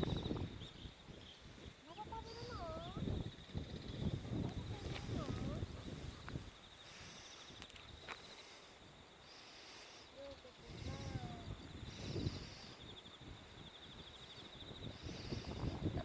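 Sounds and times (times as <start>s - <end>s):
crickets trilling: 0.0s - 16.0s.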